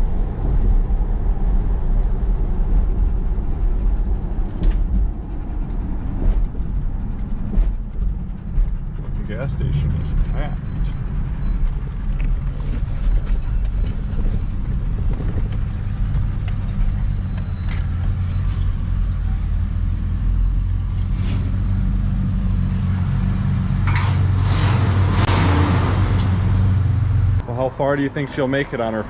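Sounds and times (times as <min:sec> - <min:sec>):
low engine drone: 0:00.0 - 0:28.3
road noise: 0:00.0 - 0:29.0.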